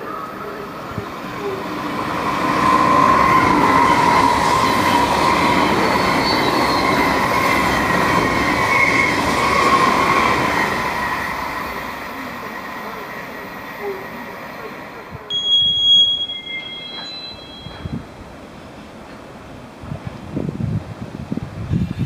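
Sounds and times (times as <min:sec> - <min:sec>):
train passing on rails: 0:00.0 - 0:22.0
wheels squealing: 0:02.0 - 0:11.8.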